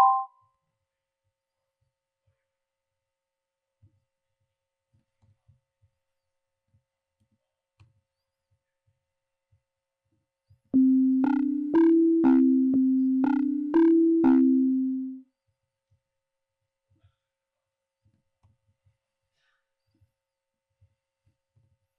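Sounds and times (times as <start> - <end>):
synthesizer notes: 0.0 - 0.3, 10.8 - 15.2.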